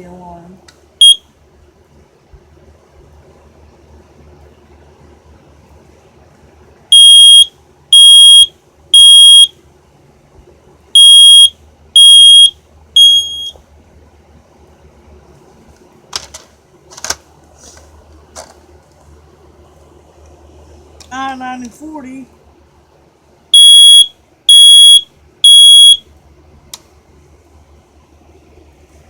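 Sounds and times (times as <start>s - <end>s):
smoke alarm beeping: 1.0s - 1.2s, 6.9s - 9.5s, 11.0s - 13.6s, 23.5s - 26.0s.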